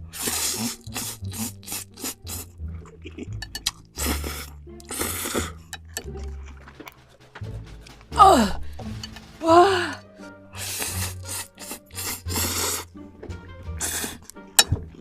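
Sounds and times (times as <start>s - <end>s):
background music with bass line: 0.0s - 15.0s
short hissing bursts: 0.1s - 2.5s, 10.6s - 12.9s.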